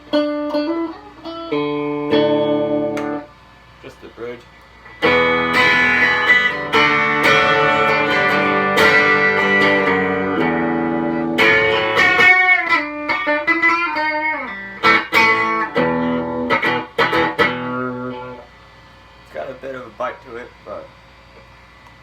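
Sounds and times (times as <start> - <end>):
electric guitar notes and chords: 0.0 - 3.4, 4.8 - 18.5.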